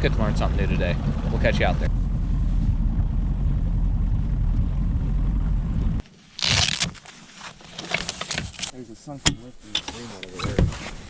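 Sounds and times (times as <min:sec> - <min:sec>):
outboard motor rumbling: 0:00.0 - 0:06.8.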